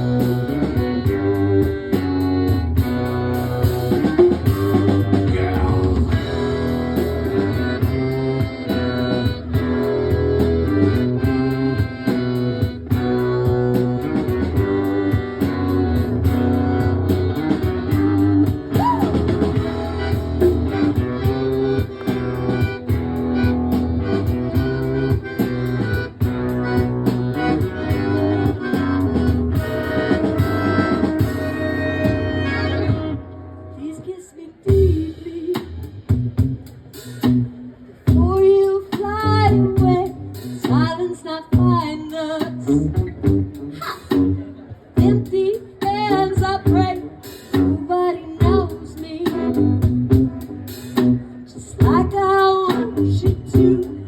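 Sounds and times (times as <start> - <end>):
live band playing: 0.0 - 54.0
plucked guitar: 0.0 - 54.0.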